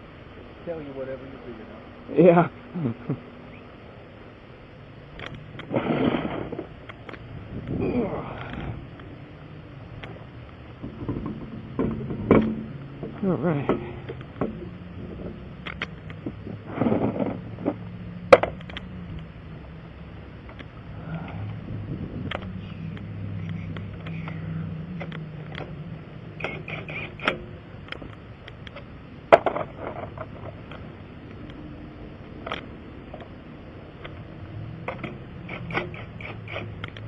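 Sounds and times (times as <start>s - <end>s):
steady low hum: 0.0s - 37.0s
sharp metal knocks: 10.8s - 15.9s, 34.8s - 36.9s
hand tools clinking and ratcheting: 34.8s - 37.0s.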